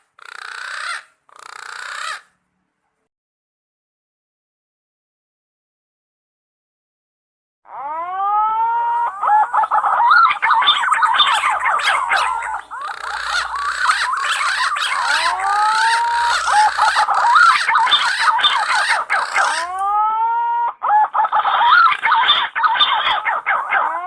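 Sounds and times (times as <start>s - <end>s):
pigeons whistling and warbling: 8.8s - 24.0s.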